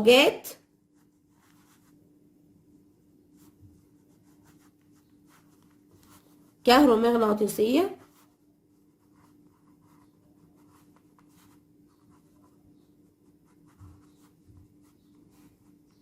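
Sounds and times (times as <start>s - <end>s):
faint steady hum: 0.0s - 16.0s
pen scratching while writing: 8.9s - 16.0s.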